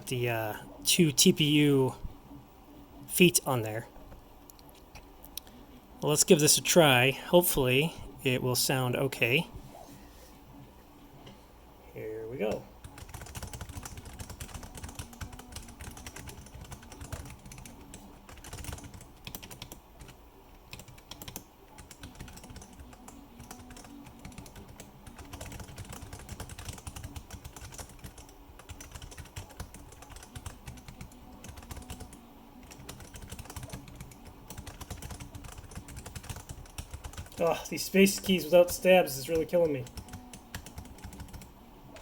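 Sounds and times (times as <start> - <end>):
mechanical keyboard typing: 12.5 - 41.5.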